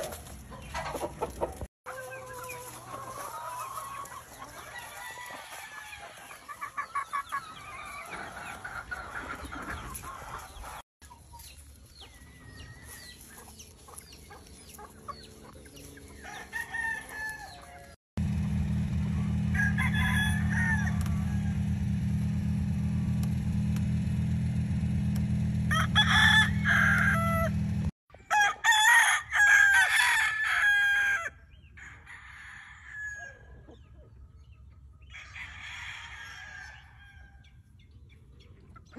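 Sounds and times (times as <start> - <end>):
clucking: 0.0 - 4.7, 6.1 - 10.8
roosters crowing: 0.0 - 10.8, 12.0 - 22.8, 23.6 - 33.9, 35.0 - 37.6.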